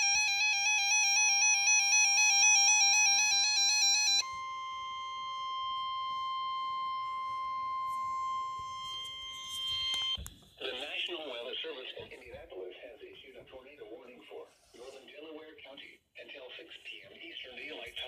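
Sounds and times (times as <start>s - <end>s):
steady warning tone: 0.0s - 10.2s
warbling two-tone alarm beep: 0.0s - 10.2s.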